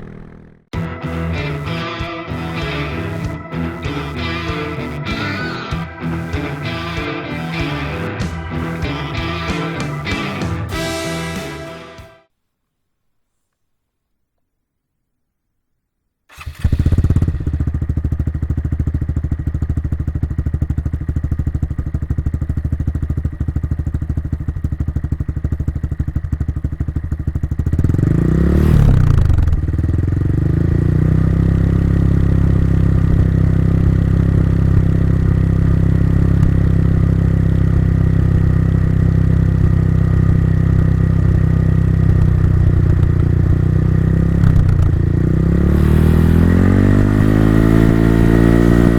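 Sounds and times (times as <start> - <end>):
motorcycle engine idling and revving: 0.0 - 11.5, 16.3 - 48.9.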